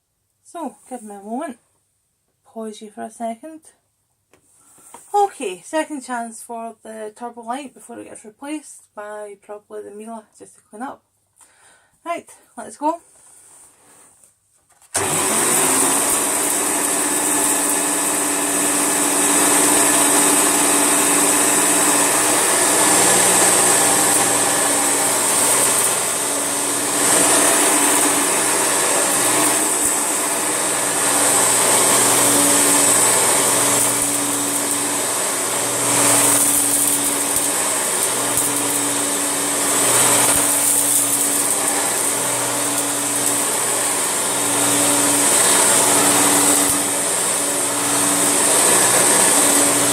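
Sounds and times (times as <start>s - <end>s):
vacuum cleaner running: 14.9s - 49.9s.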